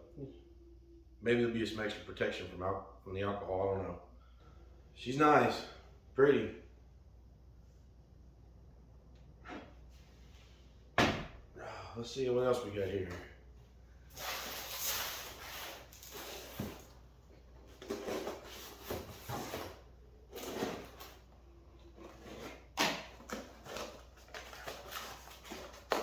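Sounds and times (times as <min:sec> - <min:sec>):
packing material rustling: 0:23.2 - 0:26.0.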